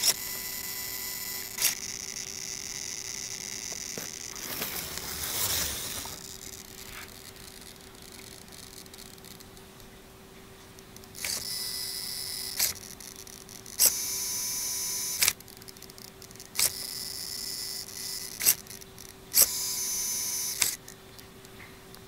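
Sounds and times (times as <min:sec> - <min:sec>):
servo high-pitched whine: 0:00.0 - 0:09.5, 0:11.0 - 0:21.0
servo clicking: 0:00.0 - 0:09.9, 0:10.7 - 0:21.6.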